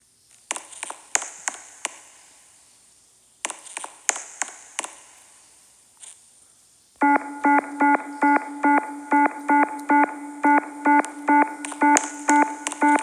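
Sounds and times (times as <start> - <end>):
rapid electronic beeping: 7.0 - 13.0.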